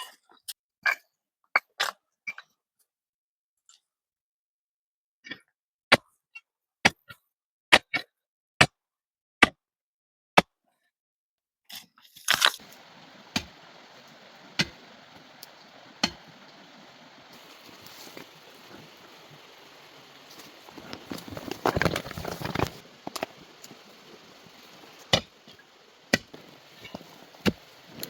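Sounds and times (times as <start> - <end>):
digging tool striking rock: 13.2 - 18.4, 19.9 - 28.0.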